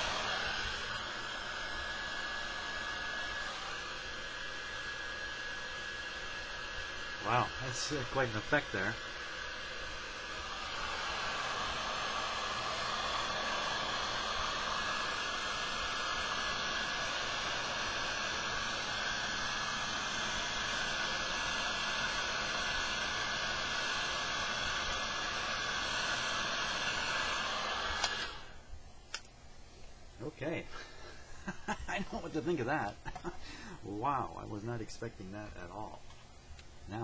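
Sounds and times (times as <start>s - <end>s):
heat gun blowing hot air: 0.0s - 29.2s.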